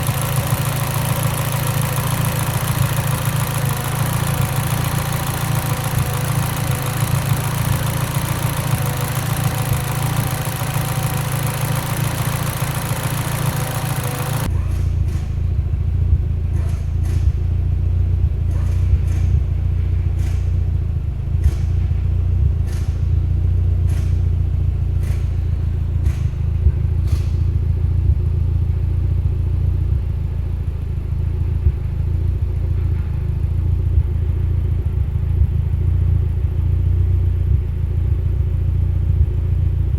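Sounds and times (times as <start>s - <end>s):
sharp irregular clicks: 0.0s - 15.3s
car engine idling: 0.0s - 39.9s.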